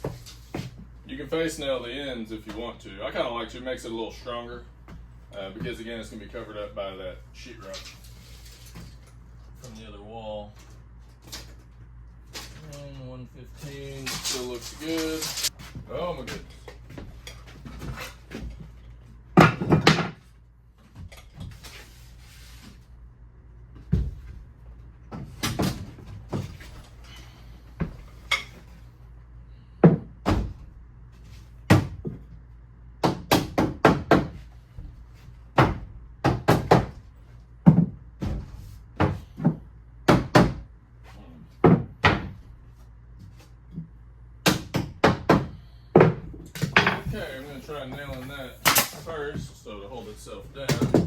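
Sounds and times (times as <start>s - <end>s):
hammer knocking wooden boards: 33.0s - 34.4s, 35.6s - 38.4s, 39.0s - 40.7s, 41.6s - 42.4s, 44.4s - 47.2s.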